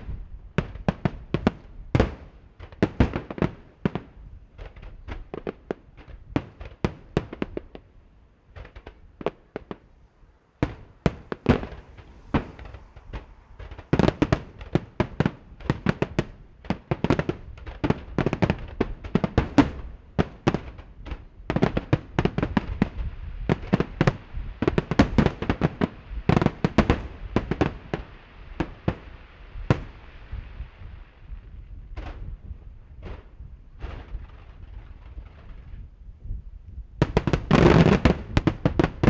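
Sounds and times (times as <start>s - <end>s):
fireworks bangs: 0.0s - 7.9s, 8.5s - 35.9s, 36.8s - 39.0s
fireworks crackling hiss: 0.0s - 39.0s.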